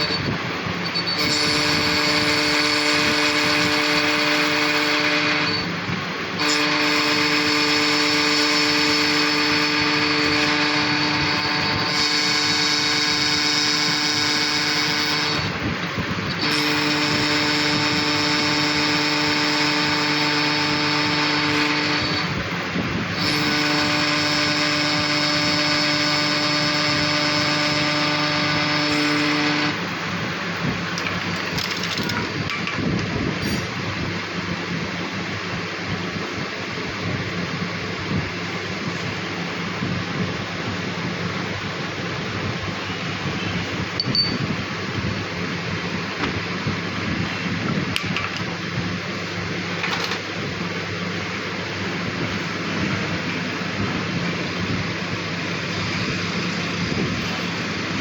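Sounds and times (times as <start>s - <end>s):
electric power tool motor running: 0.0s - 34.0s.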